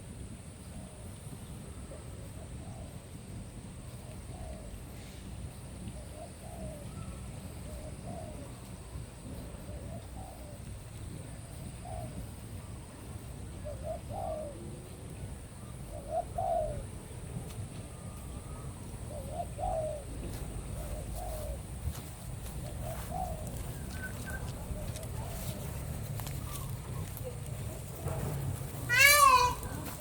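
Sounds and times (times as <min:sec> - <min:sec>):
steady low rumble: 0:00.0 - 0:30.0
dove cooing: 0:06.0 - 0:12.2, 0:13.5 - 0:17.3, 0:17.9 - 0:30.0.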